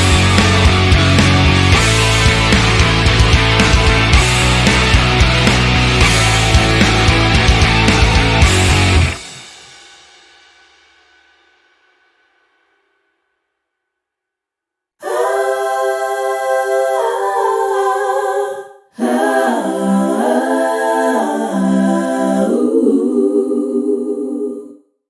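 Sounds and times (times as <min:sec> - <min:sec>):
wordless sung voices: 0:00.0 - 0:09.2, 0:15.0 - 0:24.9.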